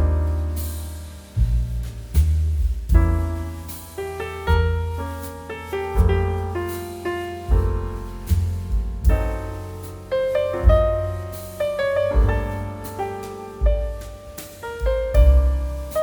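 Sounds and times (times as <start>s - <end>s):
piano chords and melody: 0.0s - 16.0s.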